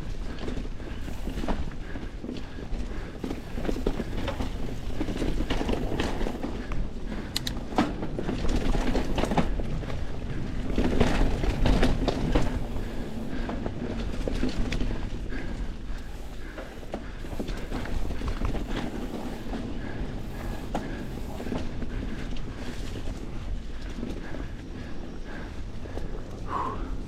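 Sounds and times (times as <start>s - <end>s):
bike rattling over bumps: 0.0s - 27.0s
bike tyres rumbling on dirt: 0.0s - 27.0s.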